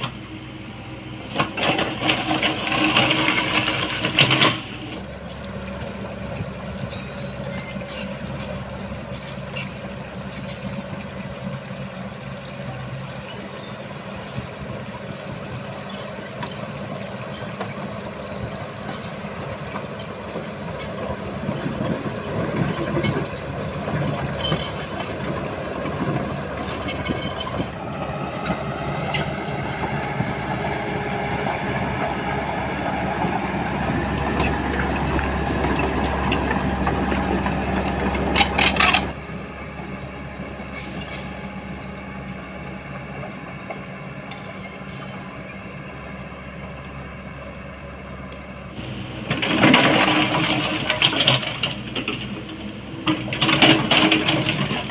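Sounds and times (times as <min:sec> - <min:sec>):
diesel engine running under load: 0:00.0 - 0:54.9
thin high squeal: 0:06.9 - 0:10.9, 0:13.2 - 0:18.0, 0:18.6 - 0:32.9, 0:33.5 - 0:39.2, 0:40.6 - 0:48.3.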